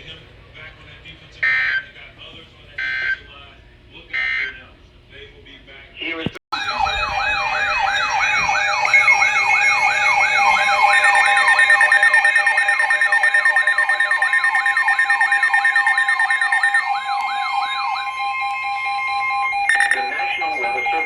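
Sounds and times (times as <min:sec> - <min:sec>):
rapid rising electronic siren: 0:06.5 - 0:21.0
steady attention tone: 0:06.6 - 0:21.0.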